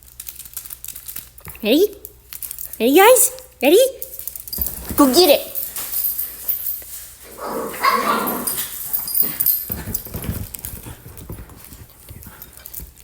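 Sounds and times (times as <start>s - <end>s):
dog vocalizing: 7.3s - 10.0s.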